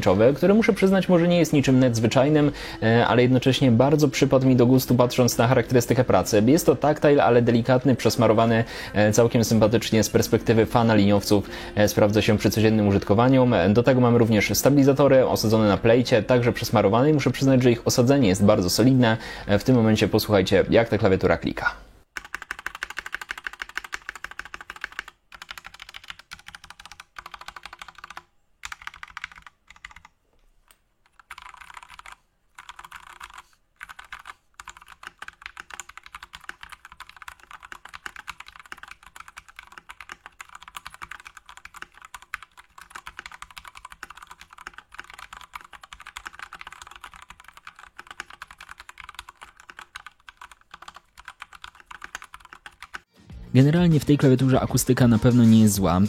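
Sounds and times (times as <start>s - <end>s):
mechanical keyboard typing: 22.1s - 30.2s, 31.0s - 53.1s.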